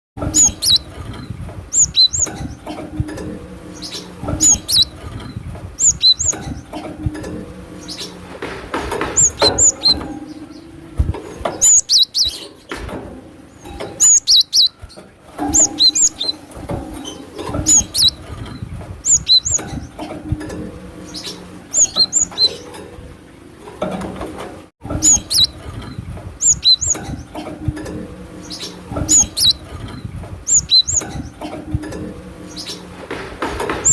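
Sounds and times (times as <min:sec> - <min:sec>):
bird calling high notes: 0:00.3 - 0:00.9, 0:01.8 - 0:02.3, 0:03.6 - 0:05.0, 0:05.8 - 0:06.4, 0:11.6 - 0:12.5, 0:14.0 - 0:14.8, 0:15.5 - 0:16.5, 0:19.1 - 0:19.6, 0:21.0 - 0:22.7, 0:25.0 - 0:25.6, 0:26.4 - 0:27.0.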